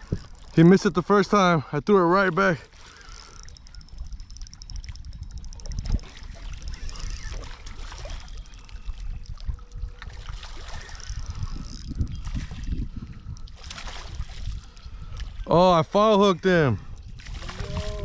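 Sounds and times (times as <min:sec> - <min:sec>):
wind rumbling on microphone: 0:00.0 - 0:01.4, 0:02.0 - 0:18.0
fishing reel clicks: 0:02.8 - 0:10.0, 0:10.6 - 0:12.2, 0:16.9 - 0:17.2
small water splashes: 0:05.8 - 0:11.4, 0:13.5 - 0:15.4, 0:17.2 - 0:18.0.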